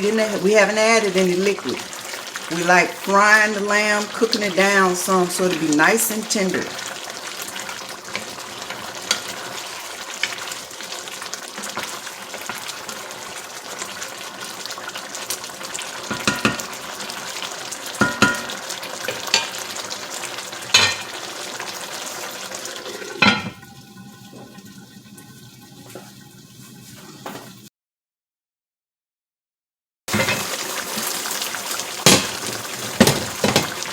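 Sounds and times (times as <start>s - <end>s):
meat sizzling in a pot: 0.0s - 27.7s, 30.1s - 33.9s.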